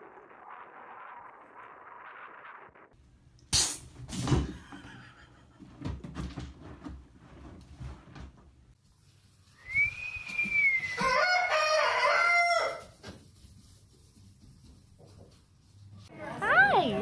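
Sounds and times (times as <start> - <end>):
rooster crowing: 10.8 - 13.0.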